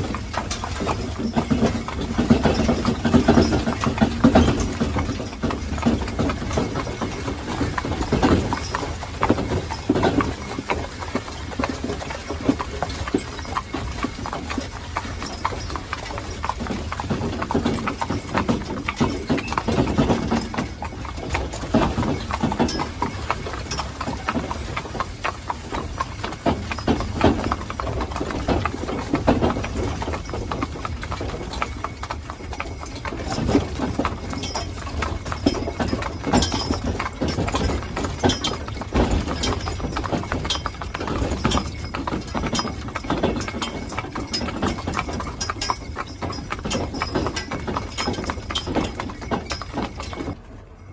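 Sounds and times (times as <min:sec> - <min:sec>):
horse hooves clip-clopping: 0:00.0 - 0:50.9.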